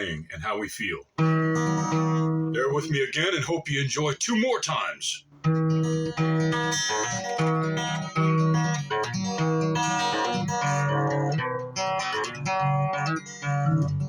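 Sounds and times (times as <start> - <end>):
plucked guitar notes: 1.1 - 3.3, 4.8 - 14.0.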